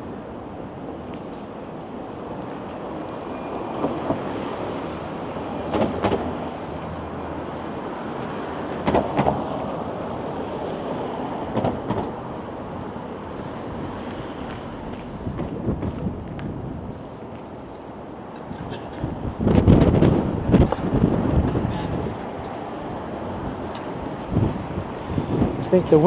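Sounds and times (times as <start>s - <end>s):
wind on microphone: 11.3s - 26.0s.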